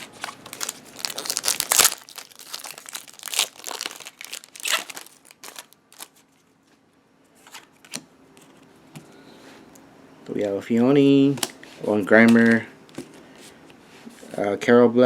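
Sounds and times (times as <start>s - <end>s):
foil wrapper crinkling and tearing: 0.0s - 6.2s.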